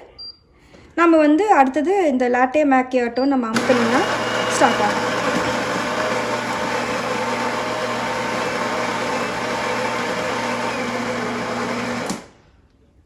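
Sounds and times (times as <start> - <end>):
coffee grinder whirring: 3.6 - 12.4.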